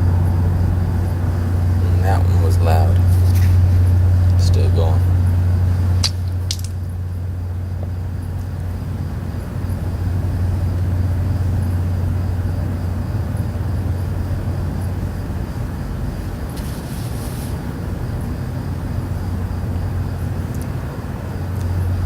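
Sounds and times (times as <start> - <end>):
faint hiss: 0.0 - 22.0
low droning hum: 0.0 - 22.0
brief crackle: 6.0 - 6.8.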